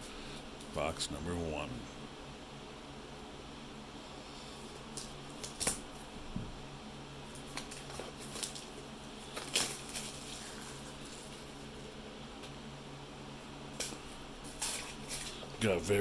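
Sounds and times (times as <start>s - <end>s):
steady low hum: 0.0s - 16.0s
packaging crinkling and clicking: 7.3s - 11.5s.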